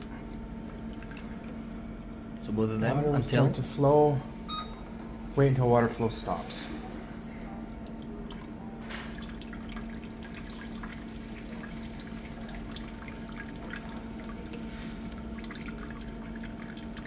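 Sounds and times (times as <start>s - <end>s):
low machine hum: 0.0s - 17.0s
water trickling and dripping: 7.2s - 17.0s.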